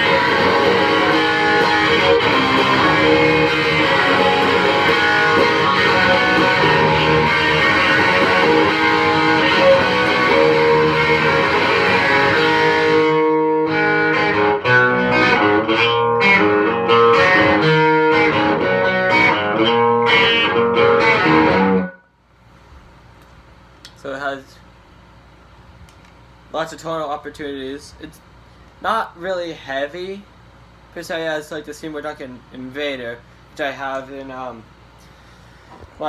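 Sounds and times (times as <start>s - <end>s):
distorted electric guitar: 0.0s - 22.0s.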